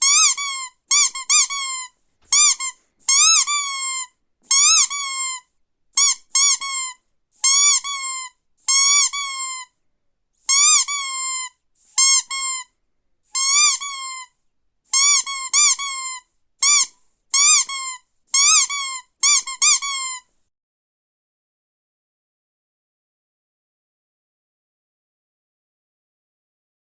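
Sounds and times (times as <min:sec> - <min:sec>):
squeaky dog toy squeaking: 0:00.0 - 0:05.4, 0:06.0 - 0:09.7, 0:10.5 - 0:12.7, 0:13.3 - 0:14.3, 0:14.9 - 0:20.3.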